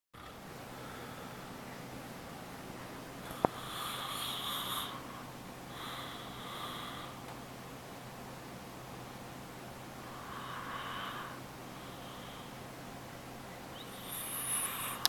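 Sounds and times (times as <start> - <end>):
man snoring: 3.4 - 5.1, 14.0 - 15.0.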